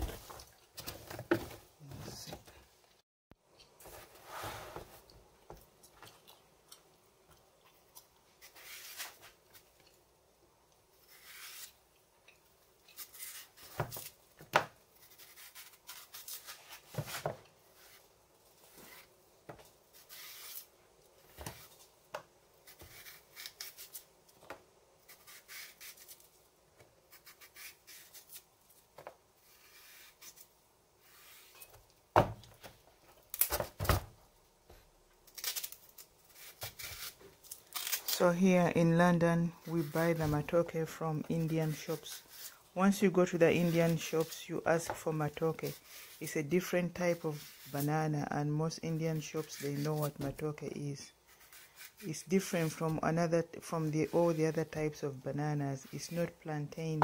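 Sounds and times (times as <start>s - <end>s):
knife scraping banana peel: 8.4s - 9.6s, 11.0s - 11.8s, 12.9s - 14.2s, 15.0s - 19.1s, 19.9s - 21.8s, 22.6s - 24.1s, 25.0s - 26.3s, 27.1s - 28.5s, 29.4s - 31.8s, 35.4s - 38.2s, 48.9s - 50.4s, 51.3s - 52.9s.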